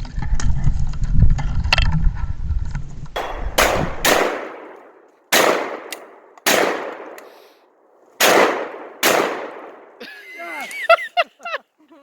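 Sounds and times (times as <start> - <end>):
shotgun shots echoing: 3.2 - 10.2.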